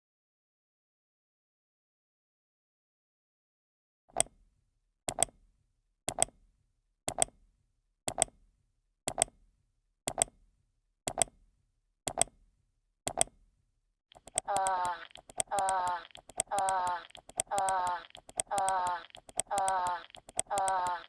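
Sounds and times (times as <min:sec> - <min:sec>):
clock-like double click ticking: 0:06.1 - 0:06.3, 0:07.1 - 0:07.3, 0:08.1 - 0:08.3, 0:09.1 - 0:09.3, 0:10.1 - 0:10.3, 0:14.1 - 0:21.0.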